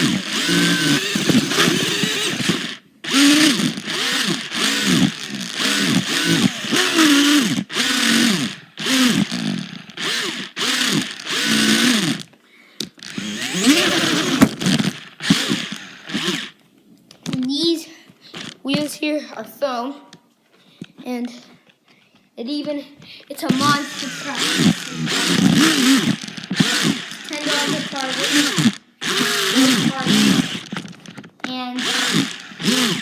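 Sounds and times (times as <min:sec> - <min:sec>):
toy truck electric motor whirring: 0:00.0 - 0:16.6, 0:18.3 - 0:18.6, 0:23.4 - 0:33.0.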